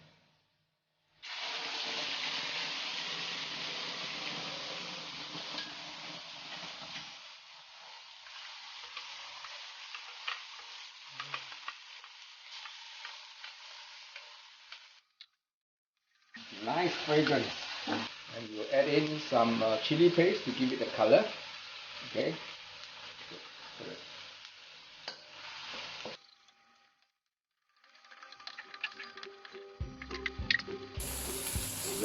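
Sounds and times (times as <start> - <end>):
paste sizzling in hot oil: 1.2 - 15.0, 16.3 - 26.2, 31.0 - 32.0
spatula scraping wok: 31.0 - 32.0.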